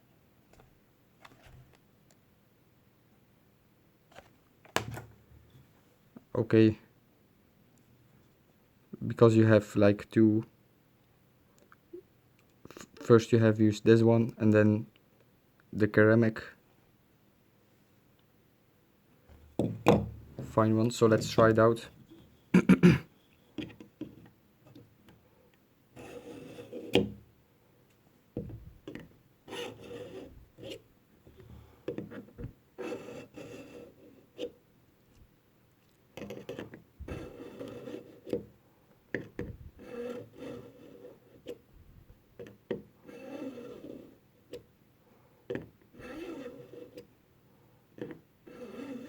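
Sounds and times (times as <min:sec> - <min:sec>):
knife scraping through sharpener: 0:26.0 - 0:26.9, 0:29.5 - 0:30.8, 0:32.8 - 0:34.5, 0:36.3 - 0:38.3, 0:39.8 - 0:41.6, 0:43.0 - 0:44.2, 0:46.0 - 0:47.0, 0:48.5 - 0:49.0.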